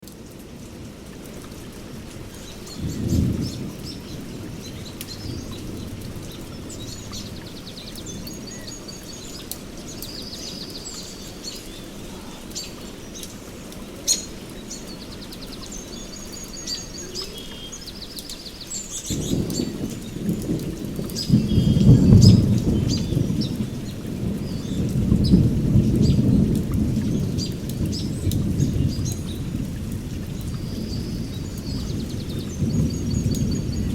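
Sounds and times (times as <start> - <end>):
heavy rain on foliage: 0.0 - 33.9
rolling thunder: 2.2 - 8.7, 19.0 - 33.9
birds chirping and trilling: 2.3 - 26.4.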